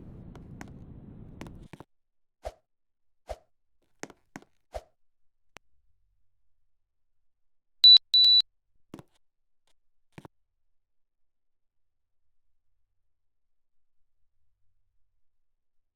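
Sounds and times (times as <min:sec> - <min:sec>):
high electronic beeps: 0:07.8 - 0:08.4.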